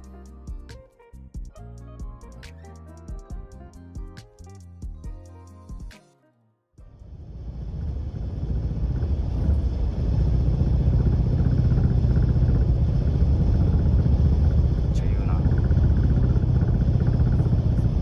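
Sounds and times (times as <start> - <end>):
car road rumble: 6.9 - 18.0.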